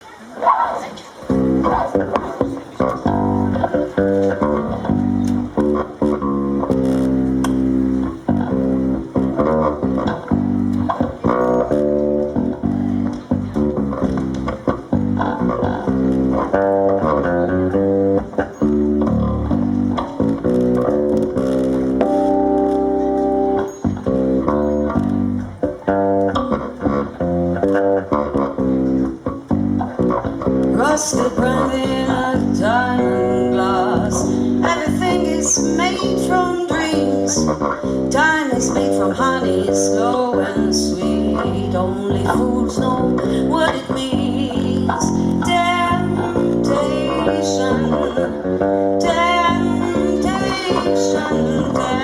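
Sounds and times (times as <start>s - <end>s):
jazz-pop band playing: 1.3s - 52.0s
plucked bass notes: 1.3s - 52.0s.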